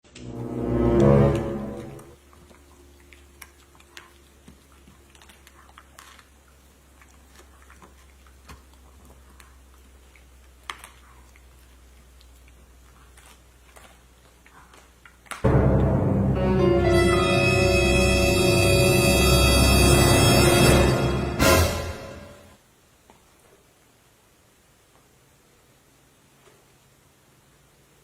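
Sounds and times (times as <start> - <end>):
music sting: 0.1 - 2.2, 15.4 - 22.6.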